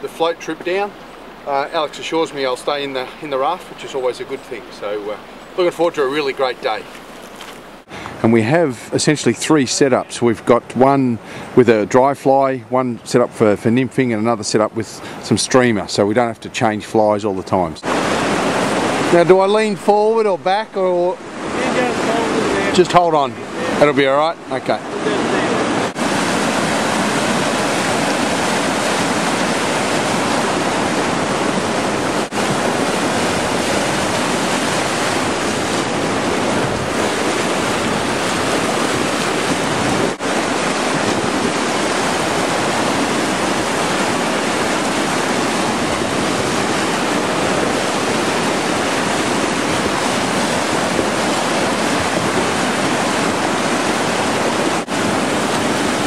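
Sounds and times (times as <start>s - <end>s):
rushing whitewater: 0.0s - 16.9s, 17.8s - 56.0s.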